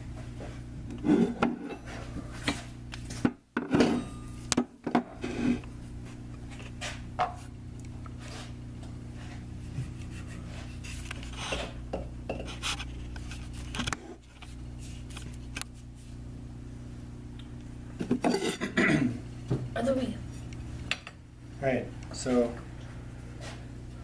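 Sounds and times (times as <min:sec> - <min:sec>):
low motor hum: 0:04.0 - 0:18.3.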